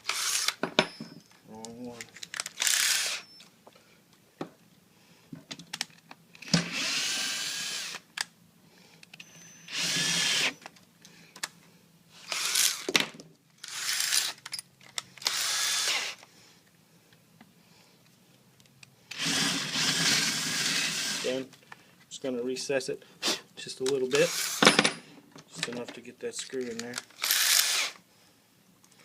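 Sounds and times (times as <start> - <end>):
power drill motor whine: 0.0 - 1.1, 2.6 - 3.4, 6.4 - 8.0, 9.2 - 10.7, 15.2 - 16.2, 19.1 - 21.3, 27.2 - 28.0.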